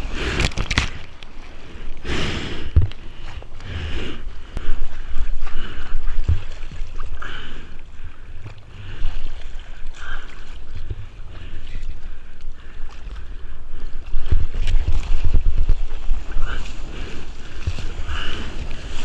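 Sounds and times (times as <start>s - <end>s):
ocean water sloshing: 0.0s - 19.0s.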